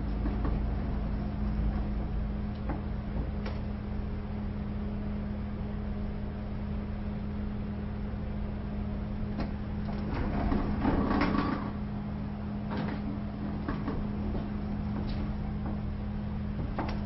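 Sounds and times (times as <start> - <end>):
sliding door rattling along track: 0.0 - 3.7, 9.3 - 11.9, 12.6 - 17.0.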